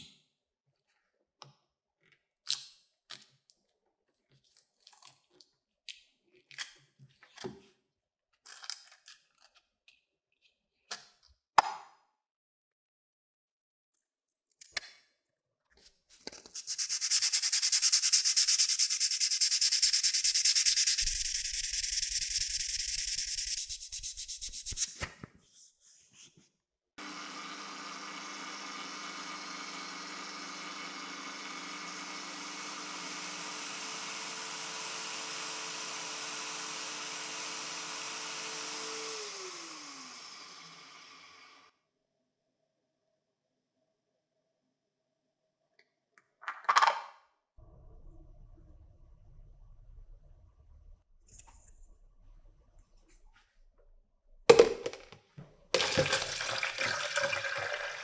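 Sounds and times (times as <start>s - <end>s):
hand sanding: 16.6s - 25.0s
small electric motor running: 16.7s - 24.4s, 27.0s - 41.7s.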